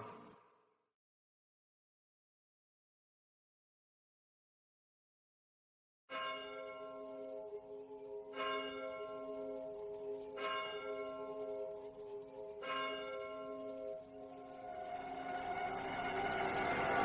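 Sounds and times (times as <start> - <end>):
bell-like chimes ringing: 6.1 - 17.0
soft low pulsing tone: 6.8 - 17.0.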